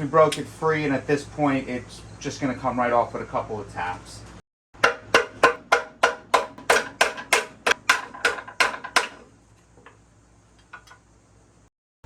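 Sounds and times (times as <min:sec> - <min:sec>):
hammer tapping on metal: 0:04.8 - 0:09.2.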